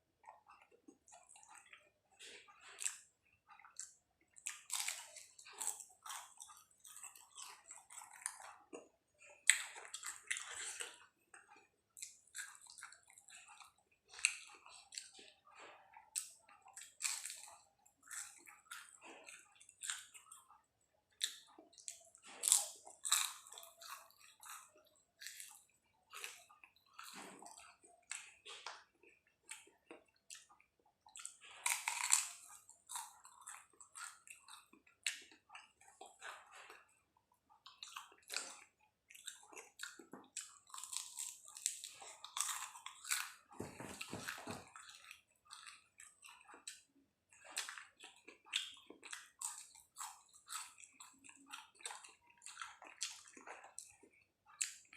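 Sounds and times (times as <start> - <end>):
person chewing food: 0.0 - 54.9.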